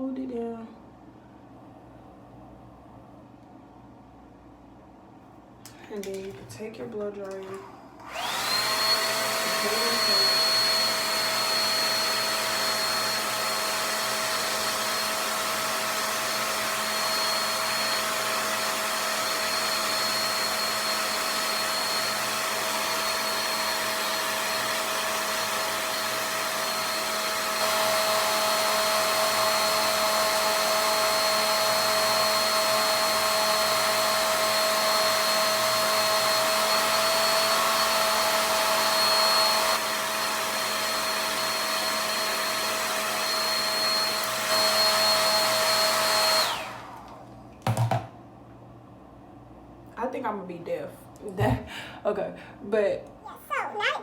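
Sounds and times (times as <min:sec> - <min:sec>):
blow dryer running: 0:05.7 - 0:48.2.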